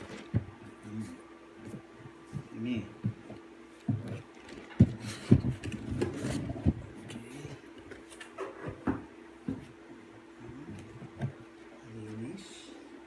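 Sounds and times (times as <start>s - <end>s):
light knocks and bumps: 1.6s - 9.8s, 10.5s - 11.7s.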